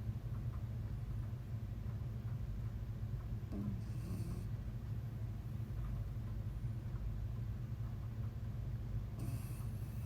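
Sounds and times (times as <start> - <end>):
puppy snoring: 3.5 - 4.6, 9.1 - 10.0.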